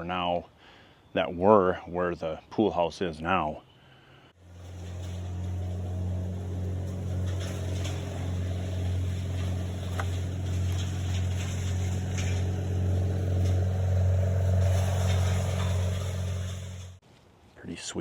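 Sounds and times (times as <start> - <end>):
vehicle engine idling: 4.4 - 17.0.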